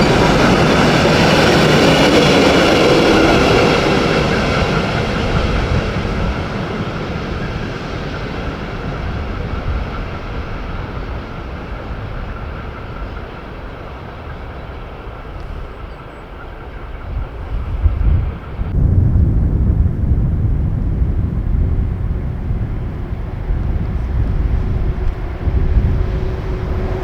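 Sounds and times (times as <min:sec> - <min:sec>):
freight train rumbling on track: 0:00.0 - 0:27.0
low rumble: 0:17.2 - 0:27.0.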